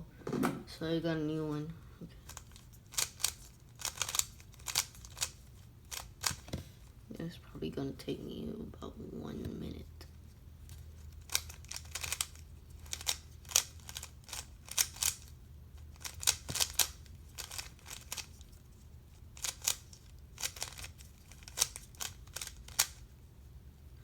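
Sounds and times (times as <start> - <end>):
plastic puzzle cube clicking: 2.3 - 6.5, 11.2 - 15.3, 15.9 - 18.4, 19.4 - 23.0.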